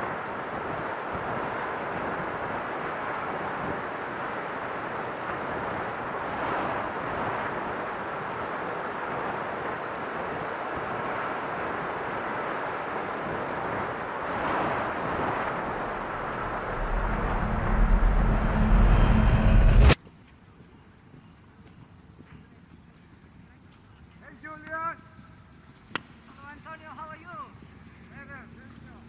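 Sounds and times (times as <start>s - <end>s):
steady rushing noise: 14.2s - 20.0s
deep rumble: 14.7s - 20.0s.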